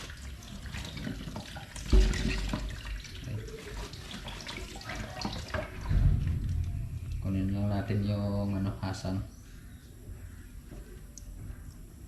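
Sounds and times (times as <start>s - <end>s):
water running and splashing: 0.0s - 6.6s.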